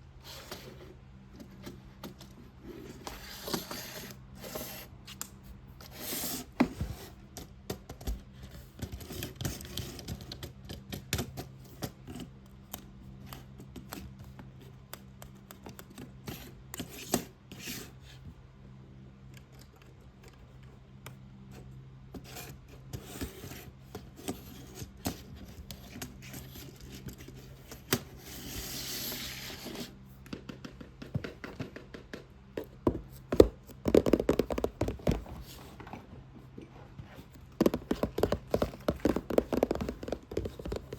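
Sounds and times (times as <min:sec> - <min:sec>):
scratching on a box: 0:00.2 - 0:18.2, 0:21.4 - 0:40.9
tapping on a box: 0:30.2 - 0:35.5, 0:37.4 - 0:40.9.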